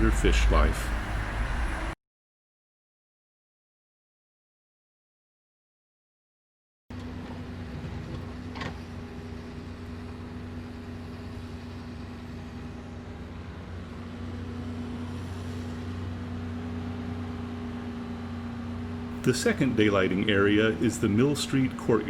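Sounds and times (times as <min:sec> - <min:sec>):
city street traffic hum: 0:00.0 - 0:02.0, 0:06.9 - 0:22.0
vehicle engines idling: 0:00.0 - 0:02.0, 0:06.9 - 0:22.0.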